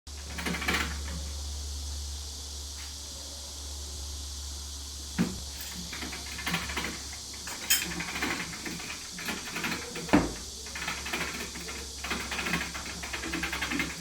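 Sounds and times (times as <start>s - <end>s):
rapid clicking and rattling: 0.1s - 1.3s, 5.3s - 14.0s
steady low hum: 0.1s - 13.3s.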